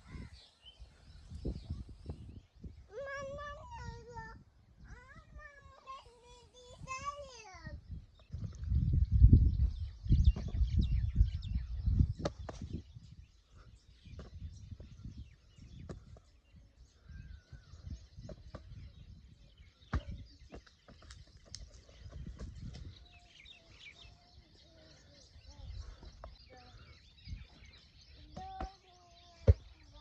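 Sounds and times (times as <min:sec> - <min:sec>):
birds chirping: 0:00.0 - 0:30.0
wind rumbling on microphone: 0:00.0 - 0:30.0.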